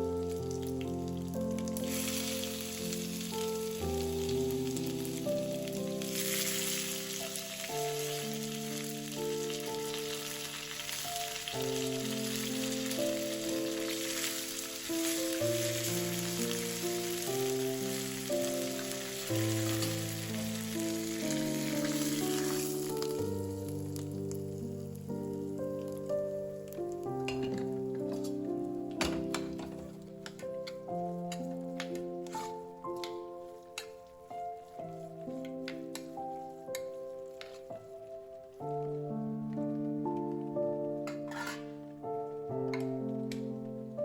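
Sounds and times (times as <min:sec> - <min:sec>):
background music with held notes: 0:00.0 - 0:44.0
food sizzling in a pan: 0:00.2 - 0:28.4.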